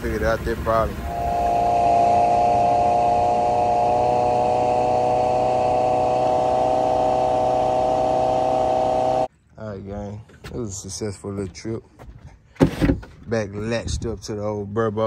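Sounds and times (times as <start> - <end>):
outboard motor running badly: 0.0 - 9.3.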